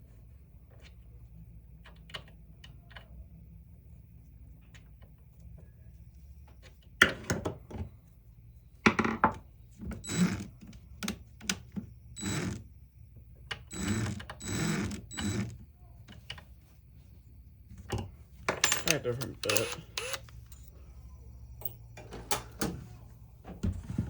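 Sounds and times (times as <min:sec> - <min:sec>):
metal tools clinking and rattling: 0:17.9 - 0:19.8.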